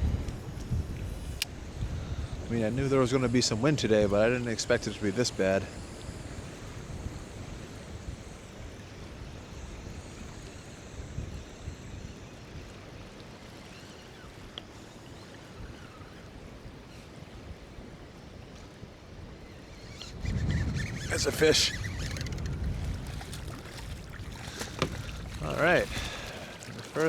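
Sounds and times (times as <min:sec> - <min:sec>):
wind buffeting microphone: 0:00.0 - 0:12.7, 0:18.8 - 0:27.0
water lapping: 0:09.6 - 0:27.0.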